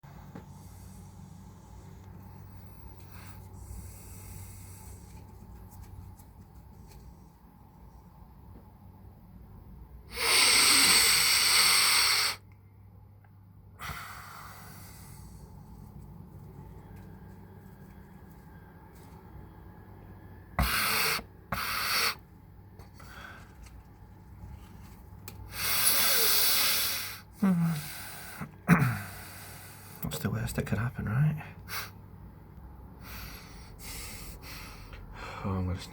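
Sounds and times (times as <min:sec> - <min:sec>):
steady low hum: 0:00.0 - 0:35.9
person taking sharp breaths: 0:02.9 - 0:05.3, 0:10.1 - 0:12.4, 0:13.8 - 0:15.6, 0:20.6 - 0:22.2, 0:22.8 - 0:23.8, 0:25.5 - 0:30.0, 0:33.0 - 0:35.5
person sniffing: 0:10.1 - 0:12.4, 0:20.6 - 0:22.2, 0:25.5 - 0:30.0, 0:31.7 - 0:32.0, 0:33.0 - 0:35.0.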